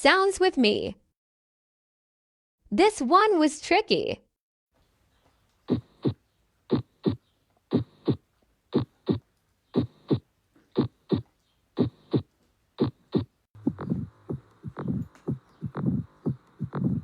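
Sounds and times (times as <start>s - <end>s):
heartbeat lub-dub: 5.7s - 17.0s.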